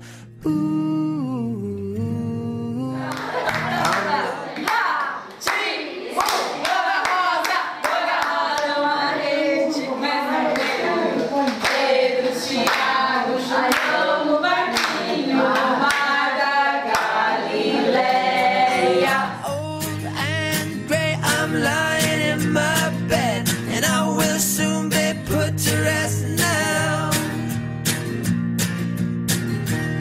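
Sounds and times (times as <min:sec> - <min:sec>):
group of voices singing: 0:00.4 - 0:27.4
hand claps: 0:03.1 - 0:08.8, 0:10.5 - 0:13.0, 0:13.6 - 0:14.0, 0:14.7 - 0:16.2, 0:16.9 - 0:17.2.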